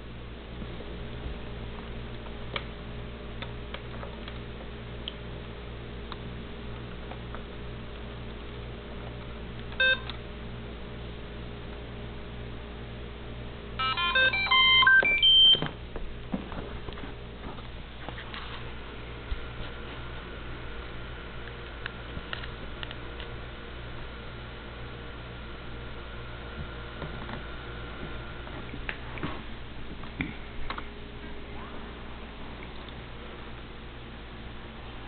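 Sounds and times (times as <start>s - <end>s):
electronic beeps: 13.8s - 15.6s.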